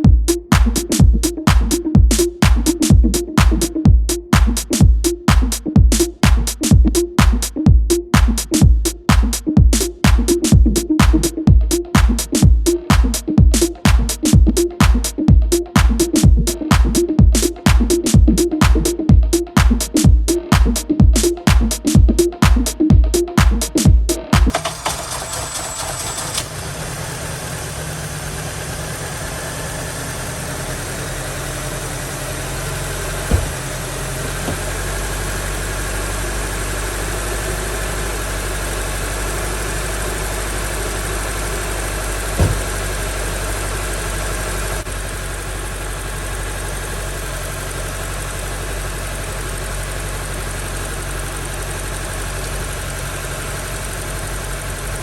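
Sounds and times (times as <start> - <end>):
car engine idling: 24.5 - 55.0
short knocks: 33.3 - 34.8, 42.4 - 42.9.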